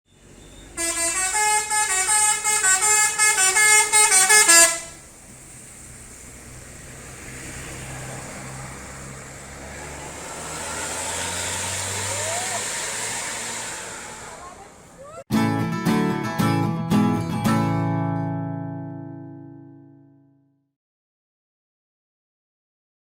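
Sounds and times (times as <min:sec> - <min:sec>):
low engine rumble: 0:00.2 - 0:15.3
bus horn playing a tune: 0:00.5 - 0:05.0.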